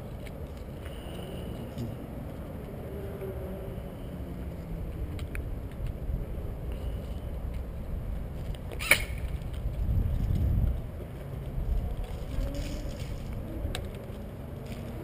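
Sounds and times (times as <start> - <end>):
low outdoor rumble: 0.0 - 15.0
sharp click: 8.7 - 9.3.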